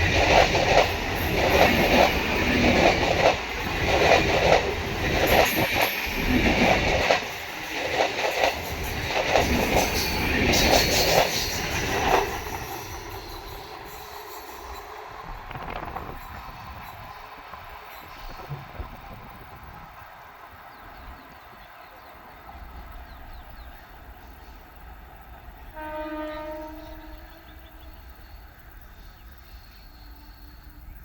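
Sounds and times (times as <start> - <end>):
train wheels clattering over rails: 0.0 - 24.6.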